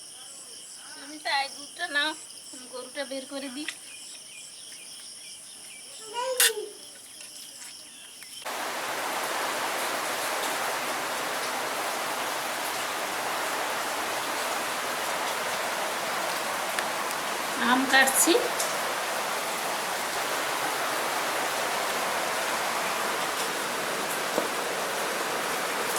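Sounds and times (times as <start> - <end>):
insects chirping: 0.0 - 25.9
heavy rain hiss: 8.4 - 25.9.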